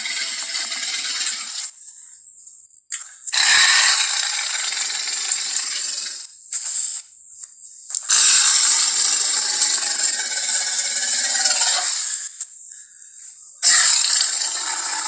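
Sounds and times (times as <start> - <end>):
dinosaur roar: 8.1 - 12.2.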